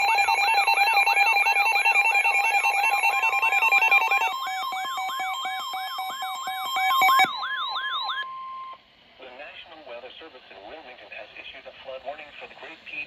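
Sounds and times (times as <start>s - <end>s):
warbling siren sweep: 0.0s - 8.3s
rapid pulsed beeps: 0.0s - 8.8s
steady single-pitch alert tone: 0.0s - 8.8s.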